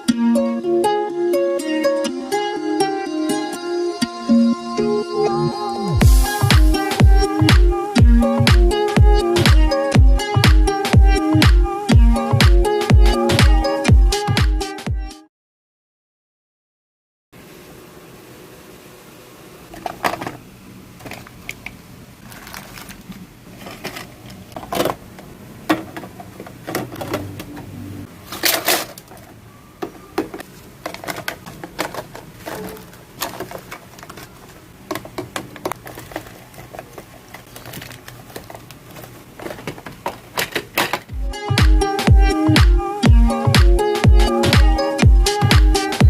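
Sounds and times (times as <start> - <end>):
plastic containers clattering: 19.7 - 20.4, 21.0 - 41.1.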